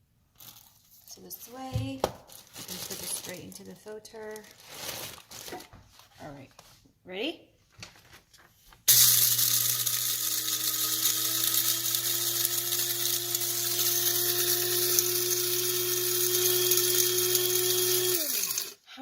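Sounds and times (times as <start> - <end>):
electric coffee grinder grinding: 8.9 - 18.8.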